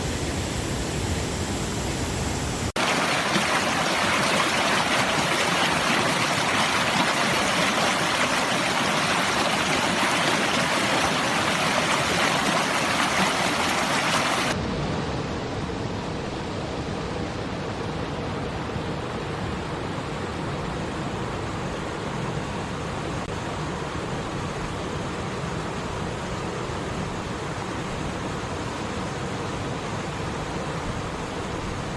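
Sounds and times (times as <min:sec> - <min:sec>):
stream rushing over rocks: 0:02.8 - 0:14.6.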